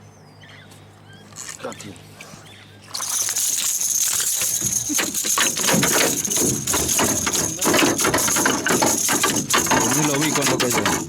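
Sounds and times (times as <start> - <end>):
irregular knocks and clatter: 3.0 - 11.0.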